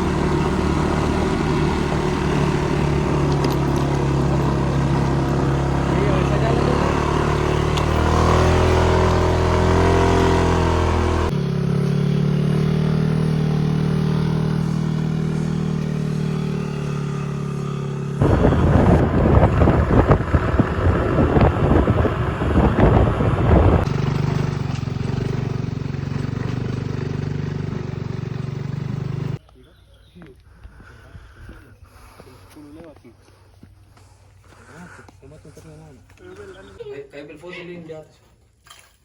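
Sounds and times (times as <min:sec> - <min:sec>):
motorcycle engine running: 0:00.0 - 0:29.4.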